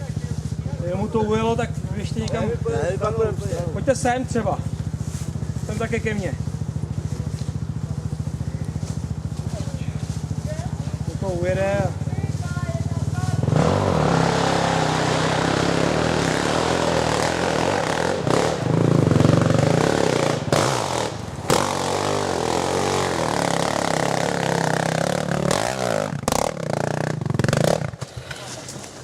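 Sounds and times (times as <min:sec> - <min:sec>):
quad engine revving: 0:00.0 - 0:28.7.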